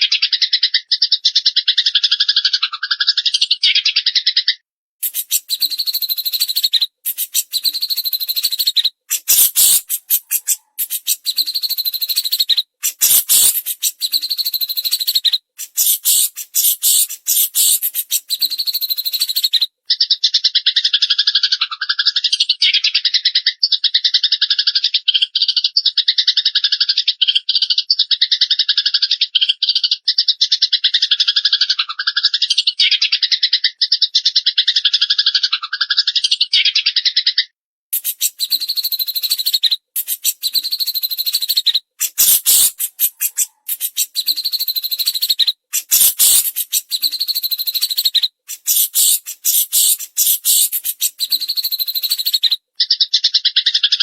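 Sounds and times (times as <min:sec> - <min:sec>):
fast high bird trill: 0:05.0 - 0:19.6, 0:38.0 - 0:52.5
high bird chattering: 0:05.0 - 0:20.2, 0:38.0 - 0:53.9.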